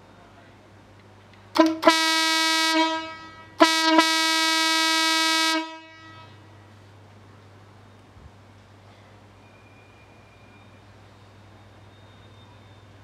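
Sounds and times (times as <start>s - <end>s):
truck air horn blasts: 1.6s - 6.4s.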